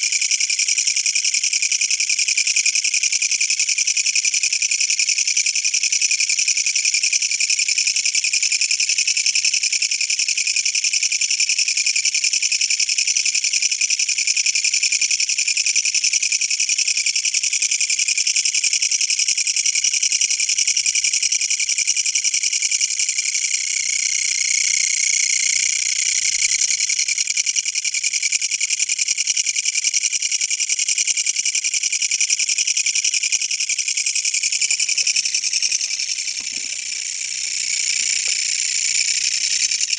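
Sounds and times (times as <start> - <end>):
katydid rattling buzz: 19.3 - 27.3, 32.2 - 39.9.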